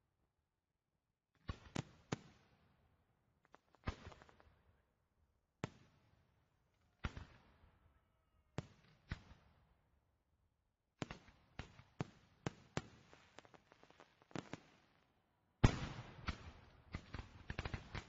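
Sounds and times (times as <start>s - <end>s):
fireworks crackling: 12.8s - 14.8s.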